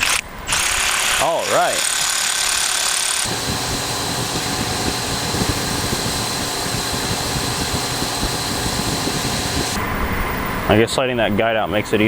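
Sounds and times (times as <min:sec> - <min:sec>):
machine humming with low rumble: 0:03.2 - 0:09.8.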